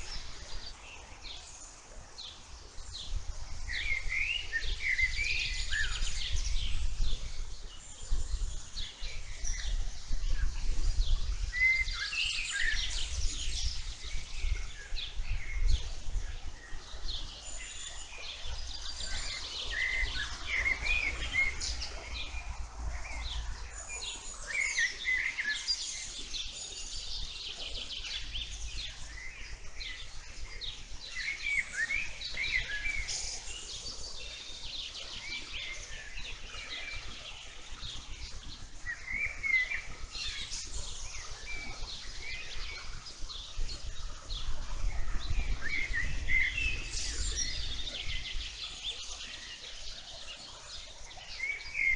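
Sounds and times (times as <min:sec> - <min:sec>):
songbirds chirping and trilling: 0:00.0 - 0:51.9.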